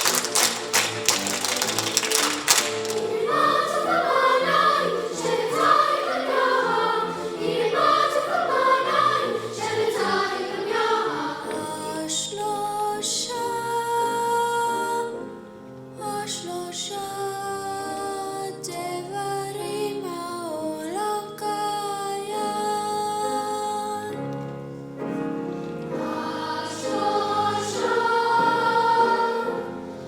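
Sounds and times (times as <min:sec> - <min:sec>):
quick percussive taps: 0:00.0 - 0:03.2
choir singing: 0:02.6 - 0:13.8, 0:25.8 - 0:30.0.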